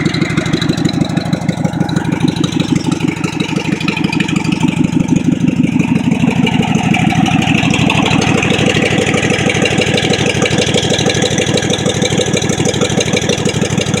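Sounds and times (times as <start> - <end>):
lawn mower engine running: 0.0 - 14.0.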